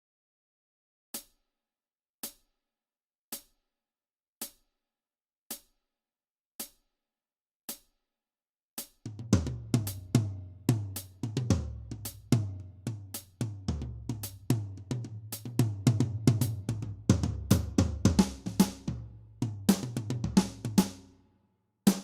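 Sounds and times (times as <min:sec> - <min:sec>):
drum kit and bass music: 0:08.8 - 0:21.0.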